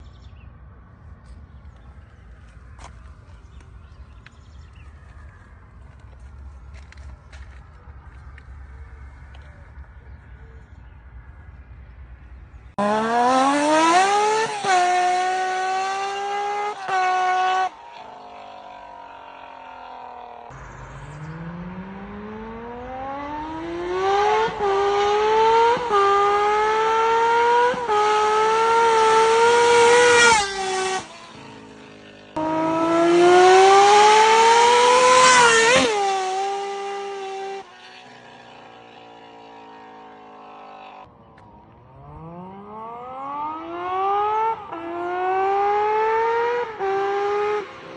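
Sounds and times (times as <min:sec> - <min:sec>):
motorcycle engine revving: 0:01.2 - 0:47.9.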